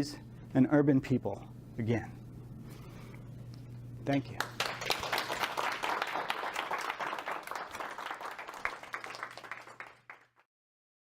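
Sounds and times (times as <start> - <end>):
audience applauding: 4.4 - 10.4.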